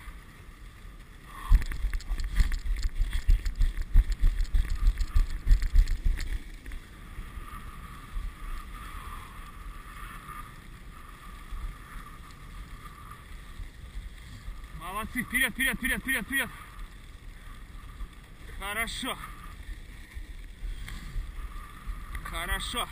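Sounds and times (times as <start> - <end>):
wind buffeting microphone: 1.4 - 6.5
sled runners hissing on snow: 6.8 - 20.0, 20.6 - 22.9.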